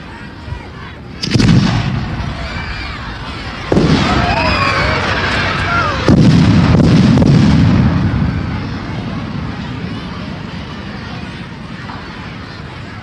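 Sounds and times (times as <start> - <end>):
heavy explosions with low rumble: 1.2 - 12.3.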